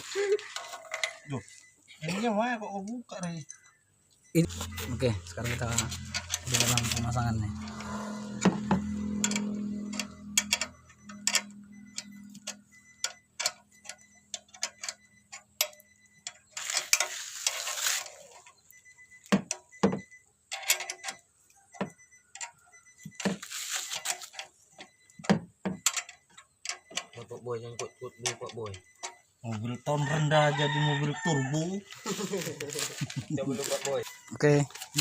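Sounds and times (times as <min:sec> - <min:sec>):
low hum: 0:04.3 - 0:14.3
scraping rustles: 0:16.5 - 0:18.6, 0:23.4 - 0:24.5, 0:31.8 - 0:35.0.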